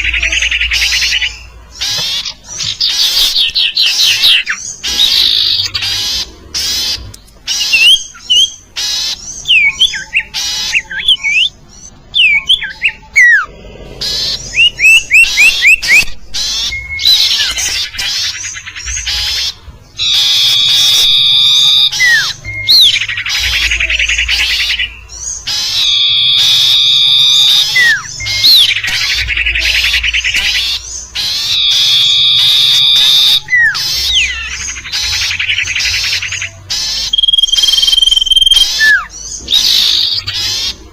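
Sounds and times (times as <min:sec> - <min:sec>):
bird chirps and whistles: 0:00.0 - 0:13.5, 0:14.1 - 0:40.8
buzzy bird squawks: 0:12.2 - 0:40.9.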